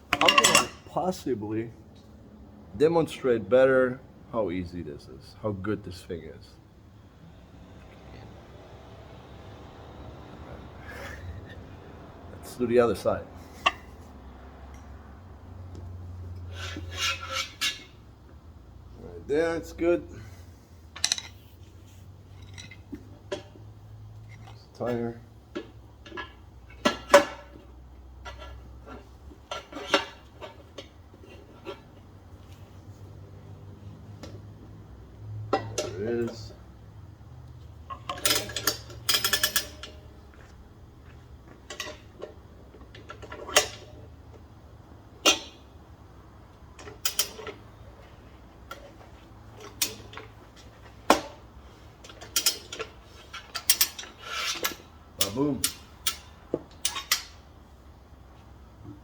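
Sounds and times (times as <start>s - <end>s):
metal tools clanking on wheel rim: 0.0s - 2.1s, 10.8s - 15.0s, 15.7s - 33.0s, 35.3s - 36.8s, 37.6s - 57.9s
metal clicks and clacks of tools: 0.1s - 0.9s, 21.0s - 21.4s, 37.9s - 40.0s, 41.6s - 44.4s, 46.8s - 47.6s, 48.7s - 50.3s, 52.0s - 57.4s.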